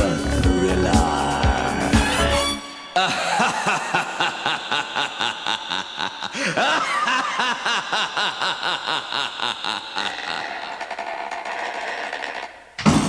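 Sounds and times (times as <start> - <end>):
music: 0.0 - 3.0, 12.8 - 13.0
theatrical evil laugh: 3.0 - 12.6.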